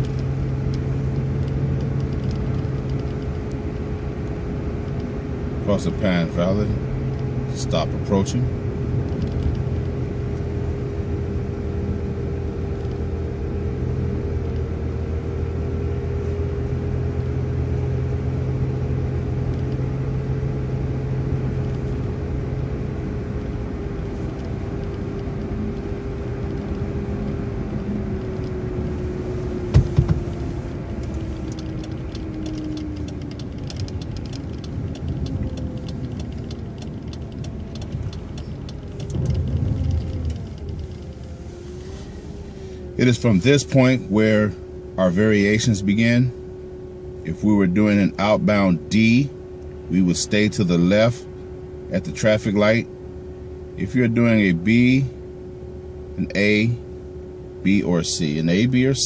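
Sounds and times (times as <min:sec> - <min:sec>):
bus engine drone: 0:00.0 - 0:59.0
drivetrain whine: 0:00.0 - 0:59.0
rapid clatter of clicks: 0:31.0 - 0:41.3.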